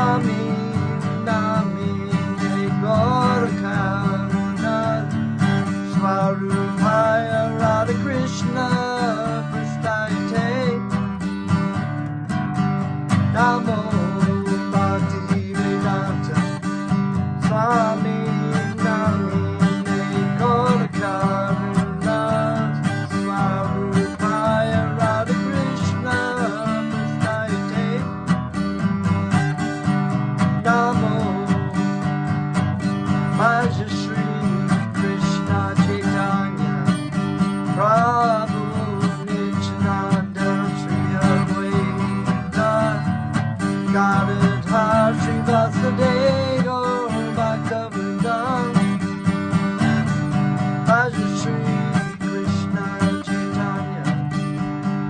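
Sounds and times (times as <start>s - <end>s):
man singing a chant: 0.0s - 10.9s, 13.3s - 16.6s, 17.4s - 28.1s, 30.6s - 31.8s, 33.2s - 37.0s, 37.7s - 49.0s, 50.8s - 54.2s
acoustic guitar strumming: 0.0s - 55.0s.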